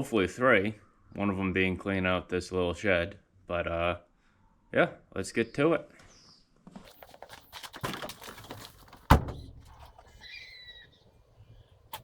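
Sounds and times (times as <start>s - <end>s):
loud thunk: 9.1s - 9.7s.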